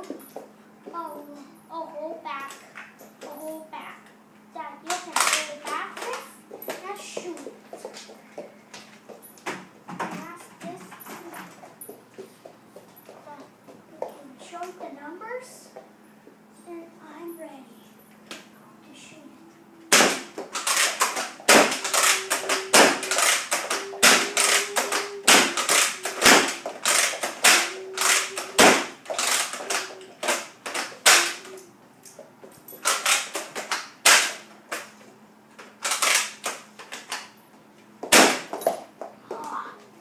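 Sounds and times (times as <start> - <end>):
toy blaster snapping shots: 4.9 - 6.3, 19.9 - 31.7, 32.8 - 34.9, 35.8 - 37.2, 38.1 - 38.8.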